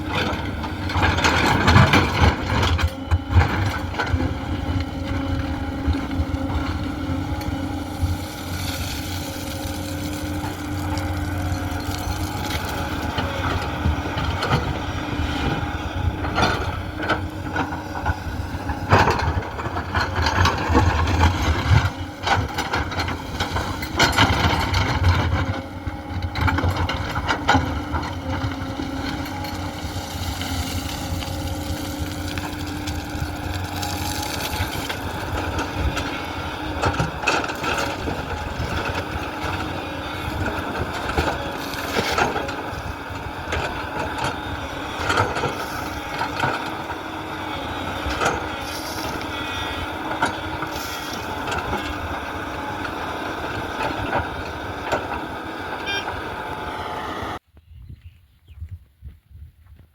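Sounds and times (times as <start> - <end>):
diesel excavator engine running: 0.0 - 57.4.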